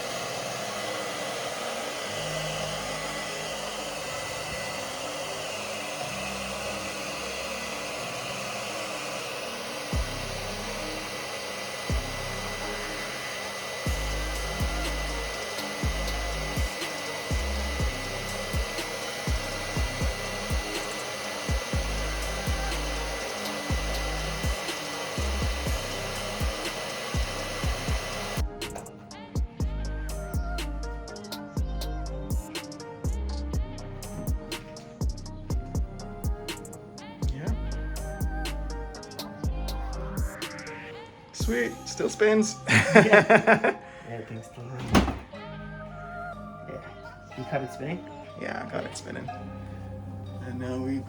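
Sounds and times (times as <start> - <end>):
hair dryer blowing: 0.0 - 29.6, 34.1 - 43.8
background music with beat: 13.7 - 43.8.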